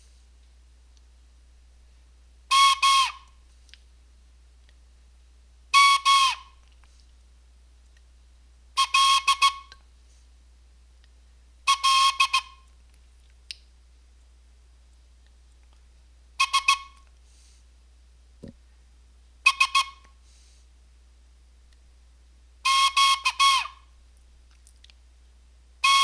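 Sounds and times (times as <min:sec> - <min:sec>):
whistle blasts in morse code: 0:02.5 - 0:03.2, 0:08.8 - 0:09.6, 0:11.7 - 0:12.5, 0:22.7 - 0:23.7.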